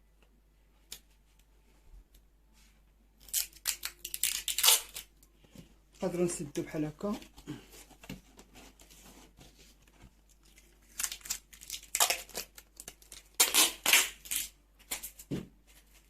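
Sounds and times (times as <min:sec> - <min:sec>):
cardboard and tape crinkling: 0:07.0 - 0:16.0.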